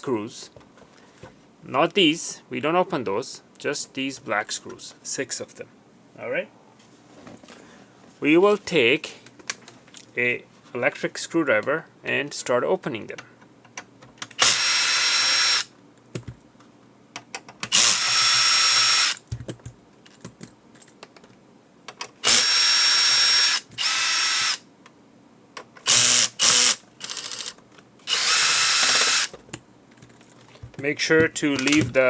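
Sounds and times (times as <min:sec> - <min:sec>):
electric screwdriver whining: 0:14.4 - 0:15.7, 0:17.7 - 0:19.2, 0:22.2 - 0:24.6, 0:25.9 - 0:29.4.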